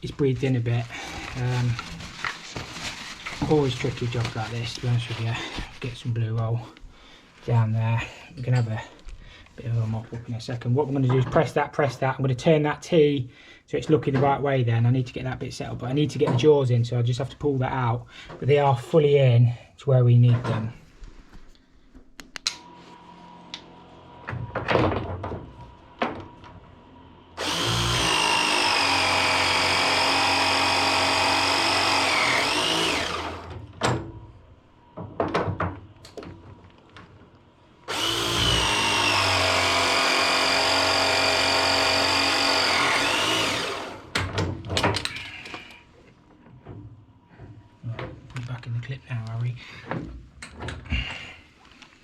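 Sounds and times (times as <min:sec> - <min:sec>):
pipe press tool motor whine: 0:27.4 - 0:33.6, 0:37.9 - 0:44.2
clicks and knocks of tool handling: 0:44.1 - 0:45.8.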